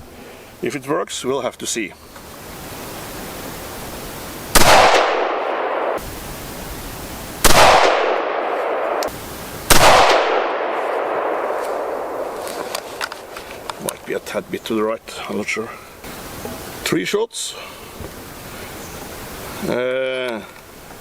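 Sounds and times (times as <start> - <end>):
rifle shots with echo: 4.6 - 6.0, 7.4 - 9.1, 9.7 - 13.3.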